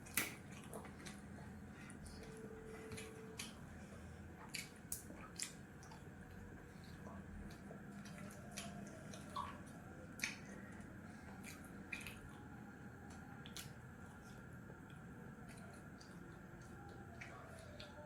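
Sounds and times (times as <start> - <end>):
person chewing: 4.4 - 6.1.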